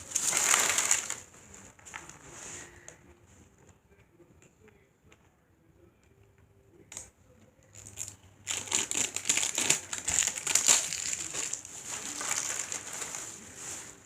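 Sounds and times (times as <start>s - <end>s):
plastic packaging crinkling: 0.0s - 2.2s, 7.7s - 14.0s.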